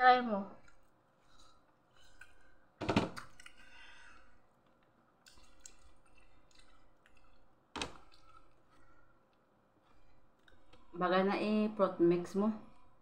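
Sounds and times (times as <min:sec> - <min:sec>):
wet chewing: 0:03.2 - 0:10.9.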